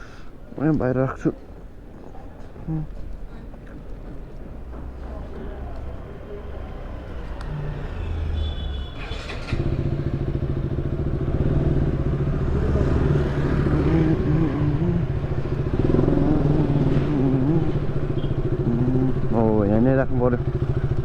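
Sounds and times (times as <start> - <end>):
motorcycle engine running: 9.0 - 21.0.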